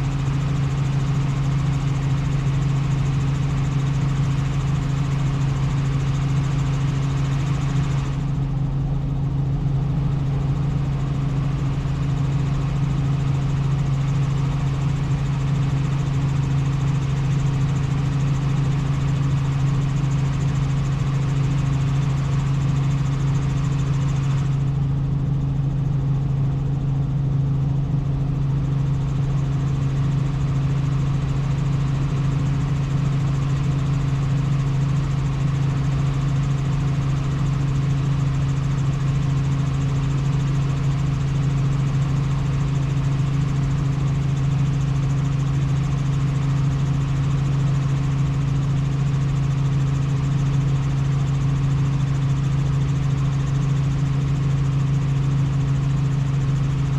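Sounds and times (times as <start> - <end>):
helicopter droning in flight: 0.0 - 56.9.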